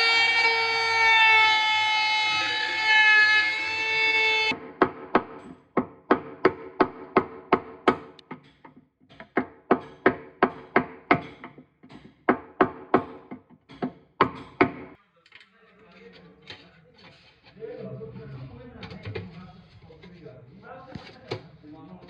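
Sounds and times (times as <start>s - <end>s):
hammer blows ringing: 0.0s - 15.0s.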